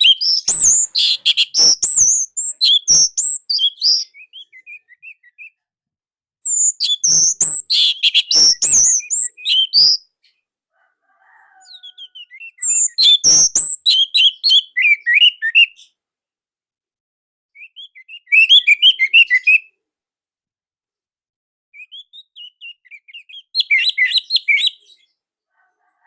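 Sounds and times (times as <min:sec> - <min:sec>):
thrush singing whistled notes: 0:00.0 - 0:05.3, 0:06.4 - 0:10.1, 0:11.8 - 0:15.8.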